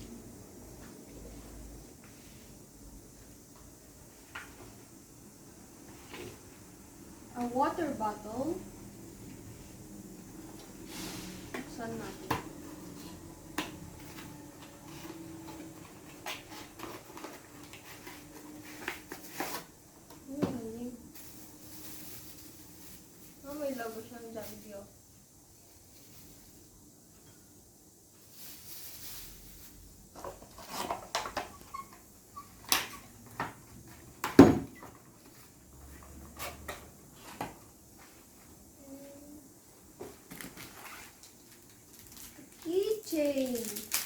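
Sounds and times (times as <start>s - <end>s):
packaging rustle: 40.3s - 44.0s.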